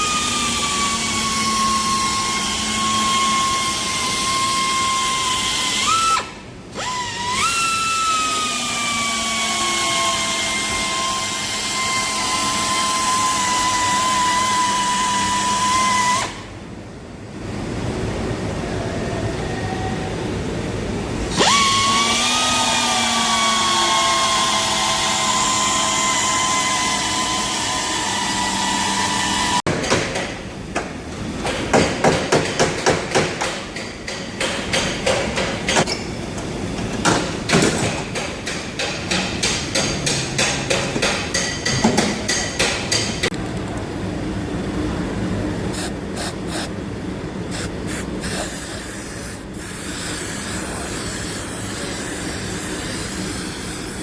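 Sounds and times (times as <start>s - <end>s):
power tool whining: 21.3s - 29.7s.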